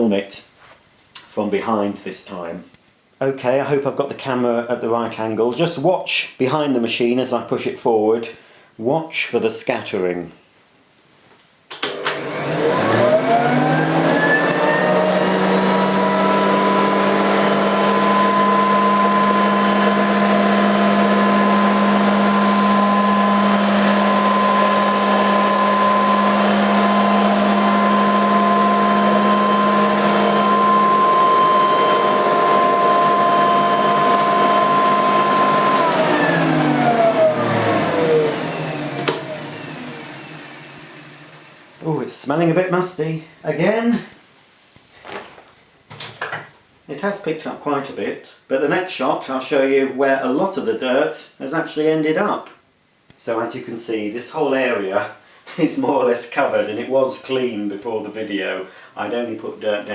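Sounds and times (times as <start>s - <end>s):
vacuum cleaner motor whining: 11.8s - 41.9s.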